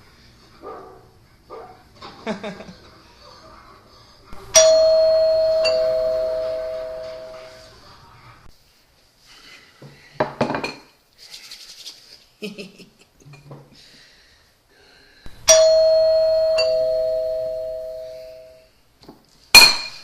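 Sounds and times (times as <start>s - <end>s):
two-note doorbell chime: 4.6s - 7.6s, 15.5s - 18.6s.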